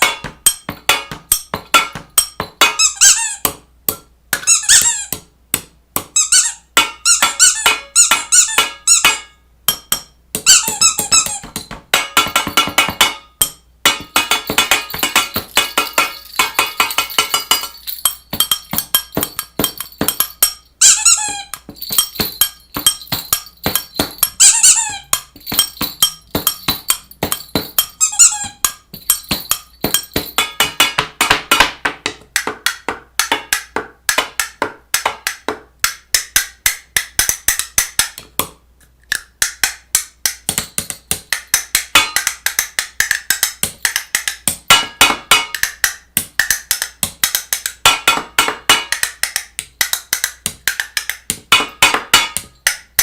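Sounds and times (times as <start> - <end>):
hard objects clicking and knocking: 0.0 - 53.0
short squeaks: 2.8 - 3.4, 4.4 - 5.2, 6.2 - 9.1, 10.5 - 11.5, 20.8 - 21.6, 24.4 - 25.2, 28.0 - 28.7.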